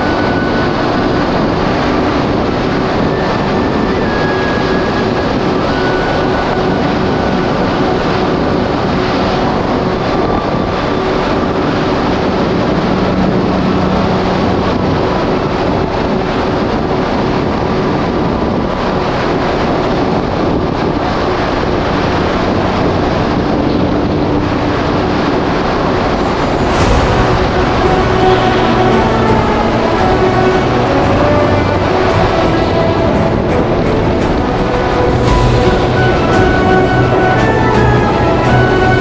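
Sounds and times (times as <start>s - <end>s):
water rushing against hull: 0.0s - 39.0s
wind buffeting microphone: 0.0s - 39.0s
water rushing past hull: 25.2s - 39.0s.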